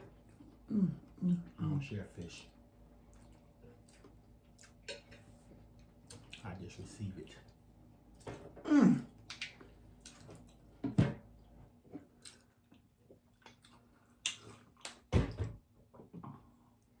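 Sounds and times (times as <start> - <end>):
mouth smacks and chewing: 9.1 - 10.6, 12.2 - 15.0.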